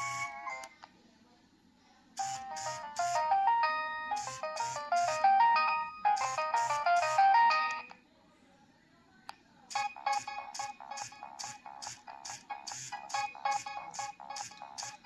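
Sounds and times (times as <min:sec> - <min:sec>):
phone ringtone melody with drum beat: 0:00.0 - 0:00.7, 0:02.2 - 0:07.9, 0:09.7 - 0:15.0.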